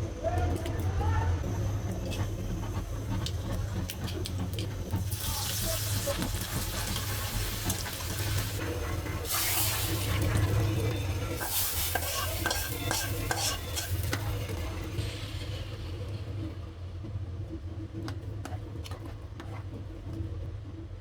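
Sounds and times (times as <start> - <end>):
food sizzling: 1.6 - 16.4
utensil scraping frying pan: 9.2 - 14.7.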